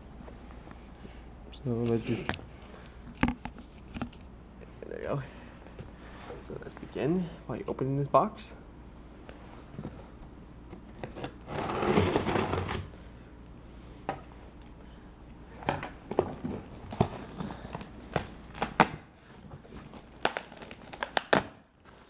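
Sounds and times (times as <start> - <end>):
cardboard box tearing: 11.0 - 12.9
packaging crinkling: 16.5 - 18.9, 19.6 - 22.0.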